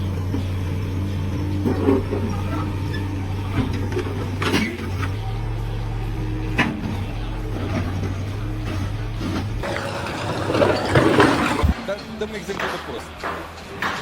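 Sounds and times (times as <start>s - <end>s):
engine humming: 0.0s - 11.8s.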